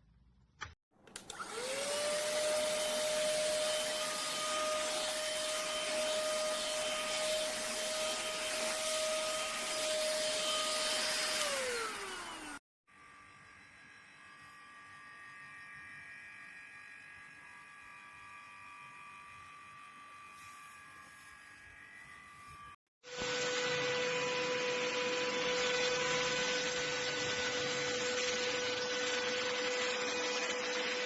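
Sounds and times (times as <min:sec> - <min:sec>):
vacuum cleaner motor whine: 0:01.1 - 0:31.0.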